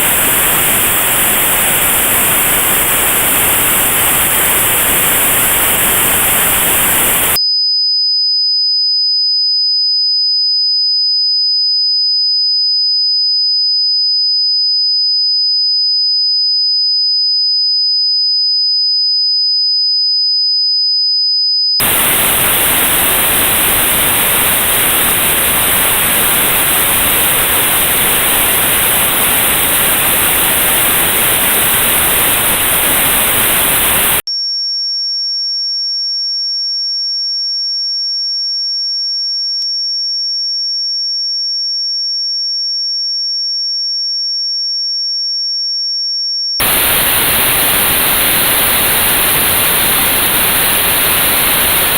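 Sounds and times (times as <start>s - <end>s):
high-pitched pure test tone: 0.0s - 7.4s, 21.8s - 34.2s, 46.6s - 51.9s
notched white noise hiss: 0.0s - 7.4s, 21.8s - 34.2s, 46.6s - 51.9s.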